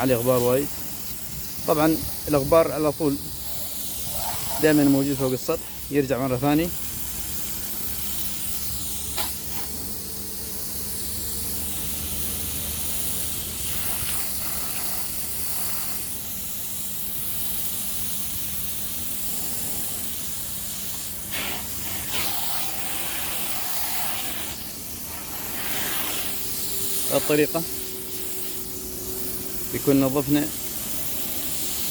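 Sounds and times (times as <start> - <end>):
water jet spraying inside tank: 0.0 - 31.9.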